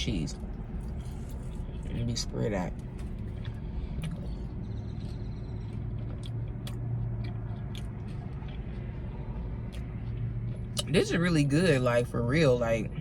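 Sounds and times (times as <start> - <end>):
steady low hum: 0.0 - 13.0
chewing and biting food: 0.3 - 11.8
wet mouth clicks: 4.0 - 4.4.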